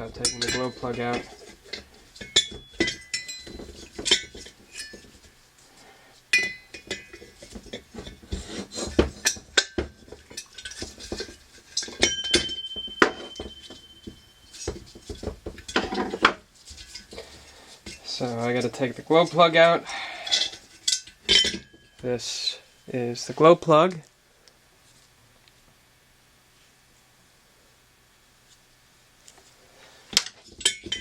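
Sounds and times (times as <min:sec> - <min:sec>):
hand tools clinking on metal: 0:00.0 - 0:05.2, 0:06.3 - 0:17.2, 0:17.8 - 0:22.6.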